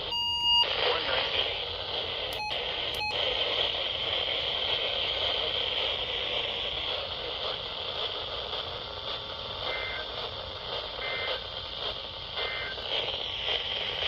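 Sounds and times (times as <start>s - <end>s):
radio static hiss: 0.0s - 14.0s
short beeps: 0.1s - 0.7s, 2.4s - 3.3s.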